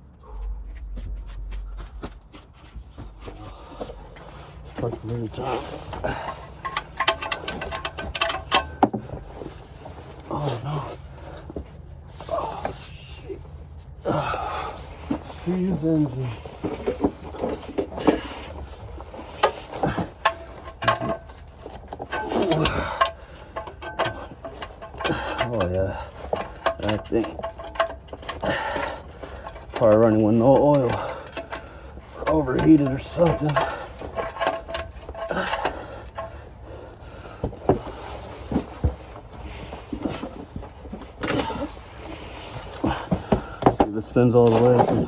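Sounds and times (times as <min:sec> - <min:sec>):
steady low rumble: 0:00.0 - 0:29.8
hand tools clicking and knocking: 0:03.0 - 0:11.6, 0:15.0 - 0:45.0.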